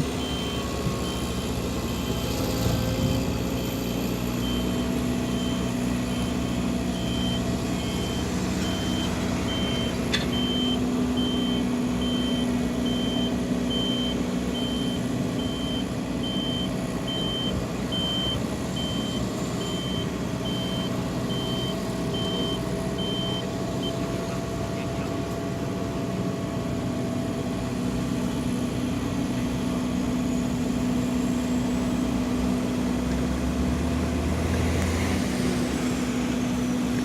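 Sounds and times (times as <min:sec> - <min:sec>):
reversing alarm beeping: 0:00.0 - 0:02.9, 0:04.3 - 0:24.0
diesel engine running: 0:00.0 - 0:37.0.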